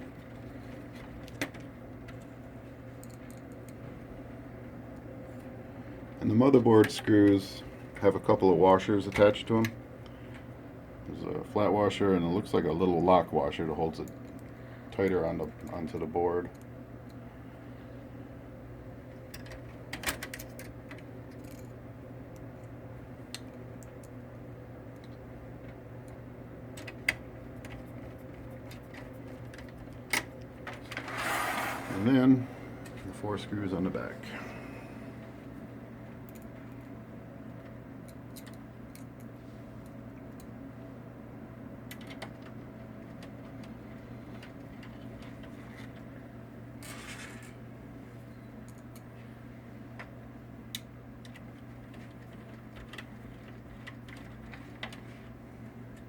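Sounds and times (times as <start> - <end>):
steady low hum: 0.0 - 56.0
short scraping rasp: 31.0 - 32.2.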